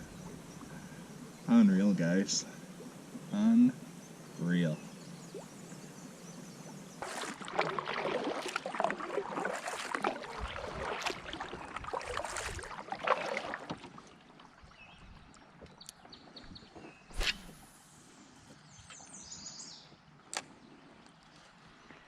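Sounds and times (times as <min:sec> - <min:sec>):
water splashing around a kayak: 0:00.0 - 0:16.4.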